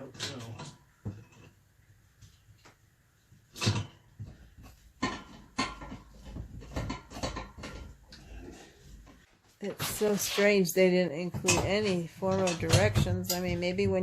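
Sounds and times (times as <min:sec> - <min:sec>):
steel bed legs knocking: 0:11.4 - 0:14.0.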